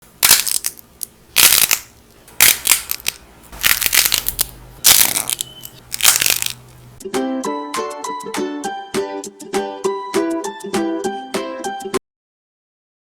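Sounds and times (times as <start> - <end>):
dried clay cracking: 0.0 - 6.8.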